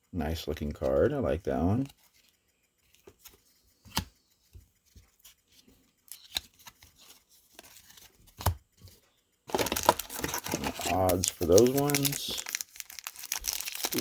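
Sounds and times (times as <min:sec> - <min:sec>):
trading cards sliding and tapping: 0:01.6 - 0:12.4
cards scraping: 0:09.5 - 0:14.0.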